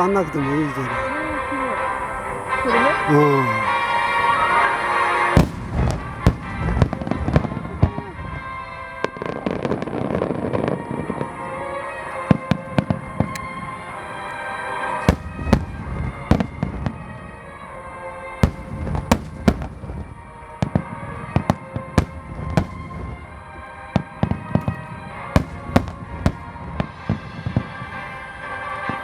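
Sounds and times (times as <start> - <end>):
music playing: 0.0 - 29.0
fireworks shells bursting: 3.8 - 7.9, 12.3 - 17.6, 18.2 - 23.6, 24.2 - 27.6.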